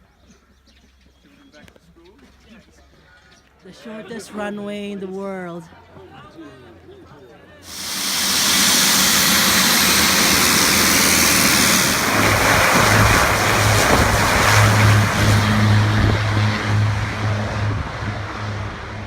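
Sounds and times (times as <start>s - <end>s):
low propeller hum: 7.7s - 19.0s
plane engines rushing: 7.7s - 19.0s.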